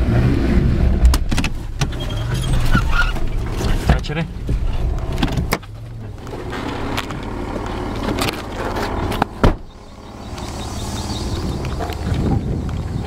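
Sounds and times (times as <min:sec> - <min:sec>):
car engine running: 0:00.0 - 0:13.0
knocks and rattles over bumps: 0:01.0 - 0:10.5.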